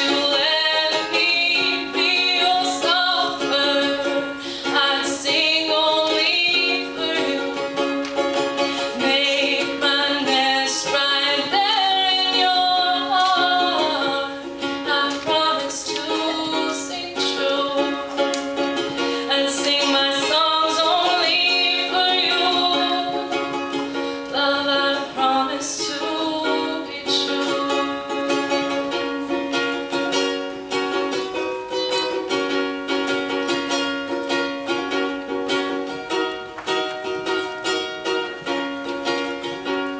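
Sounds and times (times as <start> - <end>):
person singing: 0.0 - 28.5
ukulele playing: 0.0 - 39.9.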